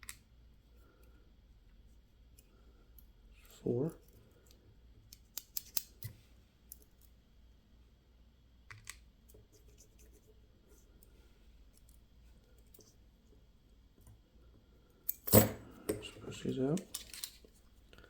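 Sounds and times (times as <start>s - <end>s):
metal lock parts clicking: 15.1s - 16.1s, 16.8s - 17.5s.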